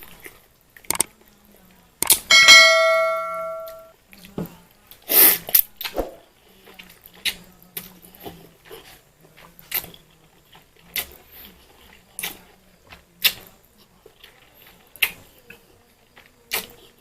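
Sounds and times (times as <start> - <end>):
chewing noodles: 4.1 - 17.0.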